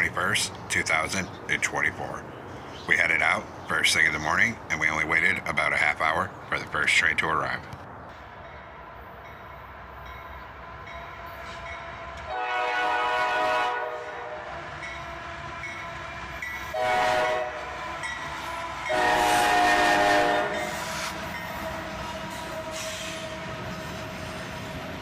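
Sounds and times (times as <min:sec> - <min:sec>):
train rumbling: 0:00.0 - 0:25.0
locomotive air horn blasts: 0:11.2 - 0:23.8.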